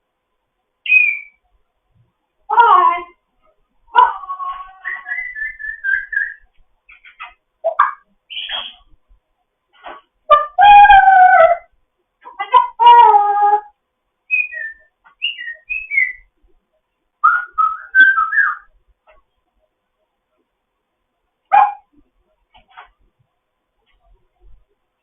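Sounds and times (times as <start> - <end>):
parrot calling: 0.9 - 1.4, 4.0 - 8.9, 14.3 - 16.3, 17.2 - 18.7
parrot whistling: 0.9 - 1.4, 4.7 - 6.4, 7.0 - 8.8, 14.3 - 16.3, 17.2 - 18.7.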